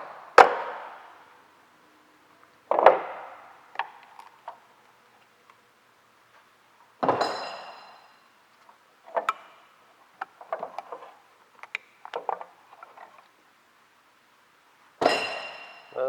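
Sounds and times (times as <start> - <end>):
metal part clanging: 15.0 - 16.0.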